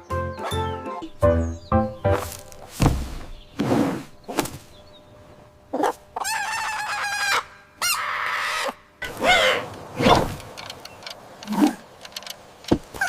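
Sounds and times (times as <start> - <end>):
chickens clucking and squawking: 5.7 - 10.2.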